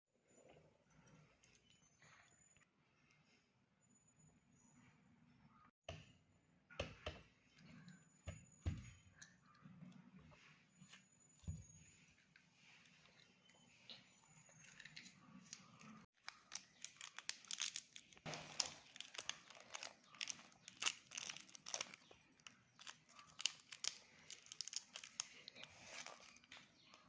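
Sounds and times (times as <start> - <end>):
plastic wrappers crinkling and tearing: 14.6 - 27.0.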